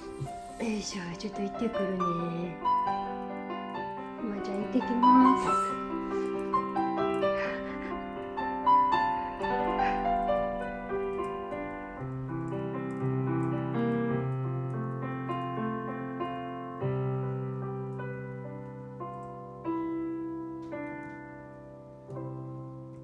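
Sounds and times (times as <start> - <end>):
gentle piano music: 0.0 - 23.0.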